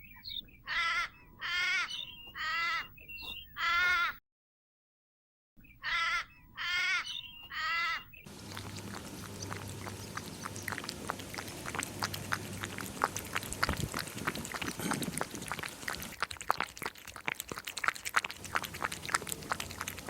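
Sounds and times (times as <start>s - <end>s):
bird calling: 7.0s - 16.2s, 18.4s - 20.0s.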